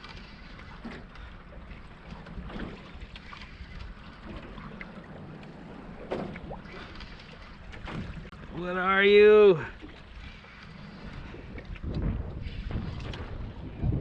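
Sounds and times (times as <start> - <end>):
water against boat hull: 0.0 - 14.0
wind on microphone: 10.0 - 14.0.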